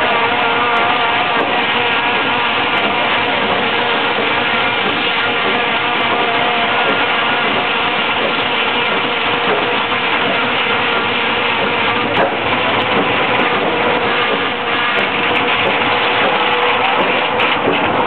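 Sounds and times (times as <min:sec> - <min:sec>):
sawmill machinery humming: 0:00.0 - 0:18.0.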